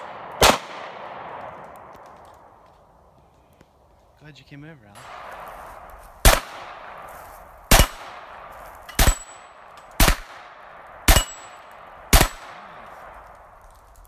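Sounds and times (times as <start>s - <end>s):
pistol shots: 0.0s - 2.0s, 5.0s - 7.1s, 7.7s - 13.3s
steel target pinging: 7.7s - 8.1s, 8.8s - 10.2s, 11.1s - 12.6s.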